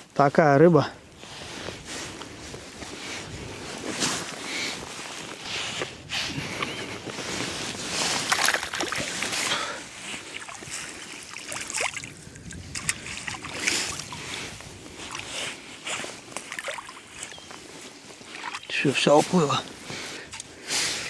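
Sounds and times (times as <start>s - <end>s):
river water splashing: 7.0s - 20.6s.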